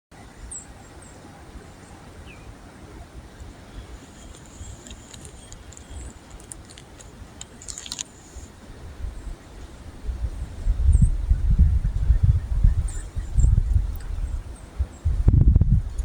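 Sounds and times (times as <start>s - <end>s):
wind buffeting microphone: 0.3s - 16.0s
light clicks: 4.1s - 8.2s.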